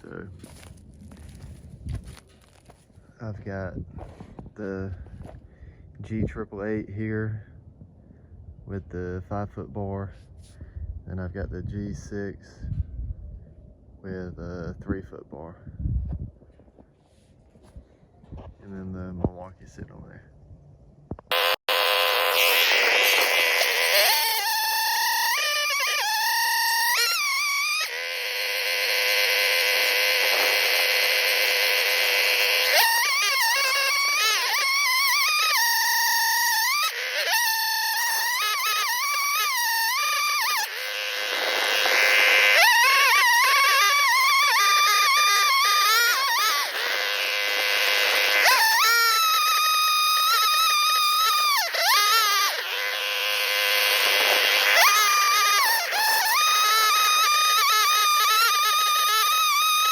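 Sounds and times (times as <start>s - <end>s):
chainsaw cutting wood: 0.0s - 2.9s, 21.2s - 59.9s.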